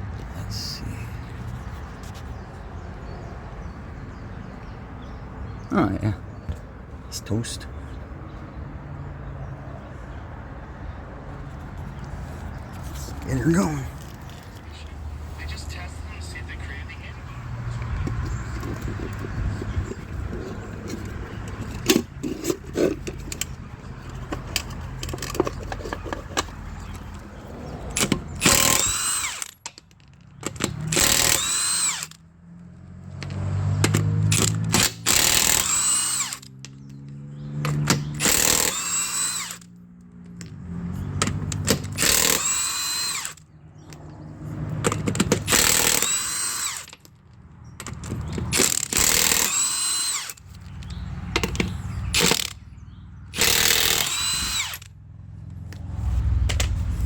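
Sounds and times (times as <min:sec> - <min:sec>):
impact wrench whining: 0:17.9 - 0:27.2, 0:27.9 - 0:29.8, 0:30.4 - 0:32.2, 0:33.8 - 0:36.8, 0:37.6 - 0:39.7, 0:41.1 - 0:43.5, 0:44.8 - 0:47.0, 0:47.8 - 0:52.6, 0:53.3 - 0:55.0.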